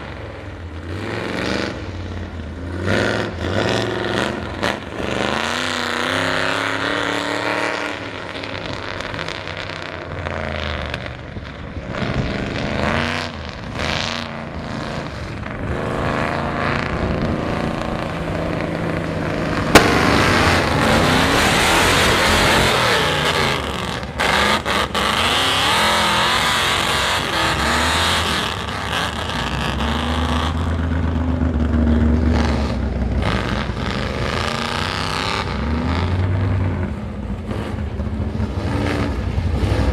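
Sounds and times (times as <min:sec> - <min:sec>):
truck engine revving: 0:00.0 - 0:39.9
sharp crack: 0:19.3 - 0:25.4.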